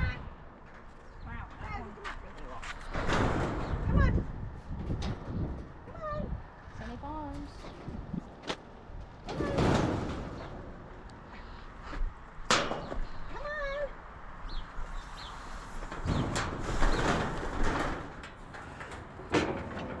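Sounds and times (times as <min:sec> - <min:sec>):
metal gates knocking and rattling: 0:00.0 - 0:04.2, 0:09.2 - 0:11.1, 0:12.4 - 0:13.3, 0:15.8 - 0:20.0.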